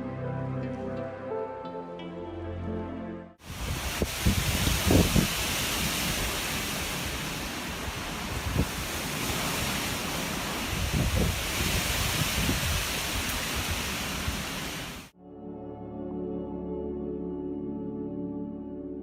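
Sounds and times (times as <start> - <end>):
wind buffeting microphone: 3.4 - 15.0
water rushing: 3.4 - 15.1
wind rushing: 3.4 - 15.1.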